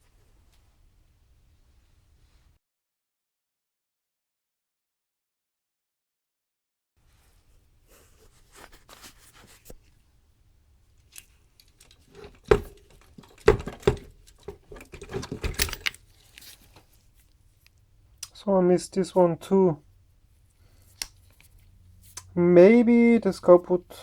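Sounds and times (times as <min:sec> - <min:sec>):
light scraping and rustling: 0:07.0 - 0:10.0, 0:11.0 - 0:17.8, 0:20.3 - 0:22.3
sharp knocks and clatters: 0:11.8 - 0:16.1.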